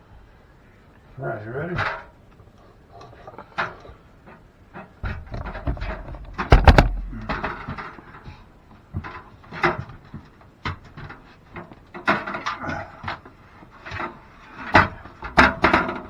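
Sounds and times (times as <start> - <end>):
attic ladder knocks and clunks: 4.2 - 16.0
heavy thump: 5.0 - 7.8.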